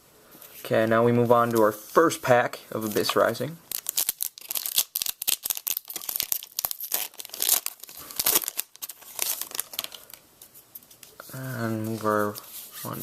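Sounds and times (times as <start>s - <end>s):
foil wrapper ripping and crinkling: 3.7s - 10.2s.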